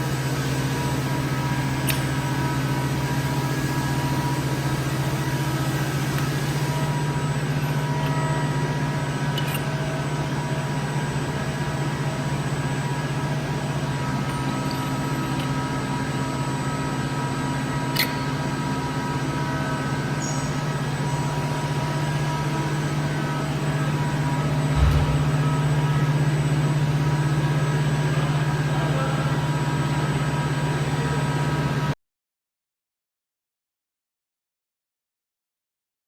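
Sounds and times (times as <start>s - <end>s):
workshop machine hum: 0.0s - 32.0s
sharp click: 17.9s - 18.2s.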